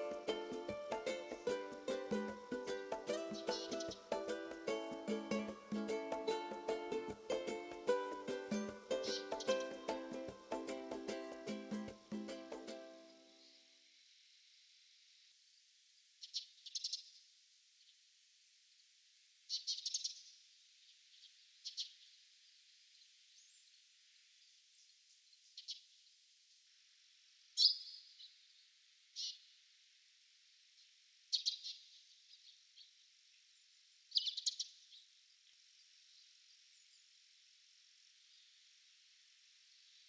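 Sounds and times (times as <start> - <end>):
small songbird calling: 3.1 - 4.3, 8.9 - 9.8, 16.2 - 17.2, 19.5 - 20.3, 25.4 - 25.9, 27.6 - 28.5, 29.1 - 29.5, 31.3 - 33.0, 33.6 - 35.1.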